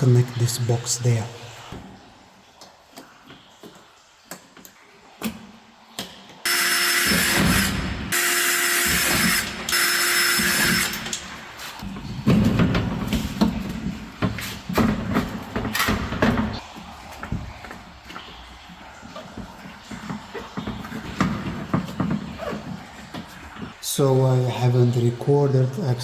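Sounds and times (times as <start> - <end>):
power drill running: 6.5 - 11.5.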